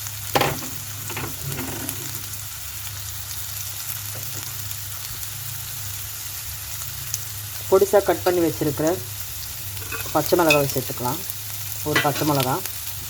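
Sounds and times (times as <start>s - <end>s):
garlic sizzling in oil: 0.0s - 13.0s
utensil knocking against pan: 11.9s - 12.4s.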